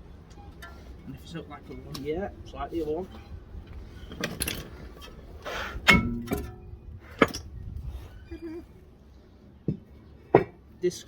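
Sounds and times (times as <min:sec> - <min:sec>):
metal clanks and knocks: 0:03.0 - 0:07.5, 0:09.7 - 0:10.6
loud ringing metal clang: 0:05.9 - 0:06.8.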